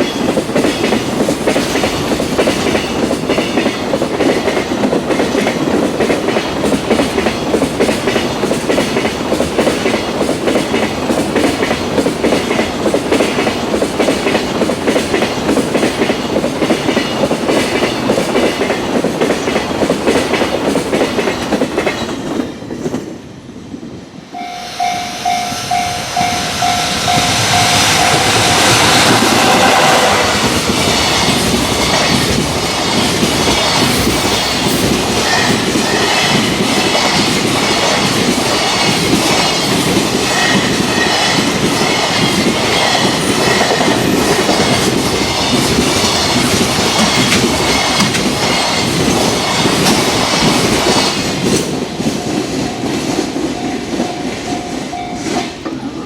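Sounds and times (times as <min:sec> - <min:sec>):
train wheels clattering on rails: 0:00.0 - 0:23.3, 0:24.3 - 0:56.0
train rumble: 0:00.0 - 0:56.0
level crossing bell ringing: 0:24.4 - 0:28.3.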